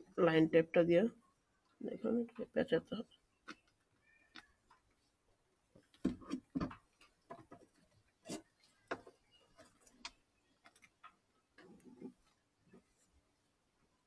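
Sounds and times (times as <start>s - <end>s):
hands wrapping tape on pipe: 5.8s - 13.0s.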